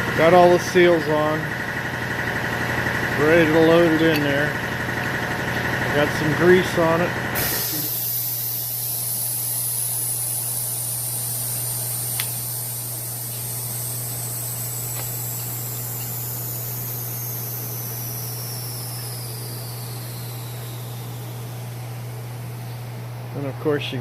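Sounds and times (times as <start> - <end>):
low machine hum: 0.0 - 24.0
high whine falling in pitch: 7.8 - 23.8
sharp click: 12.1 - 12.5.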